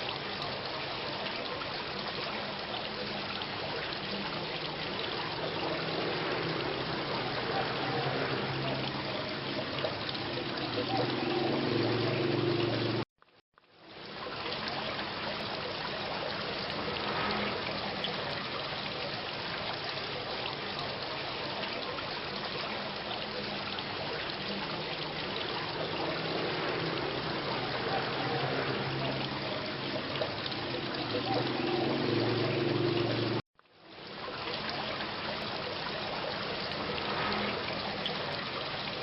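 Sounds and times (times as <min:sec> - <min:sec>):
steady rain falling: 0:00.0 - 0:39.0.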